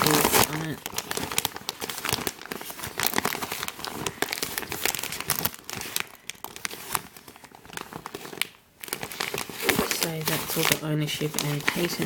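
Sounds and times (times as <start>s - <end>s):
plastic bag crinkling: 0.0s - 12.0s.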